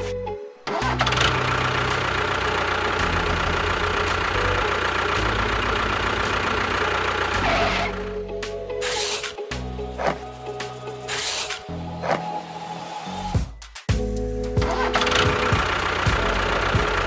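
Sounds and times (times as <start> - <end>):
engine idling: 0.7 - 8.3, 14.6 - 17.0.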